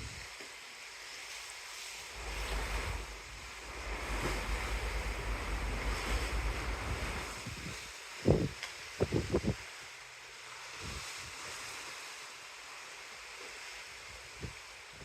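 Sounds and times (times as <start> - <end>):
rushing sea water: 0.0 - 15.0
wind buffeting microphone: 2.1 - 9.6.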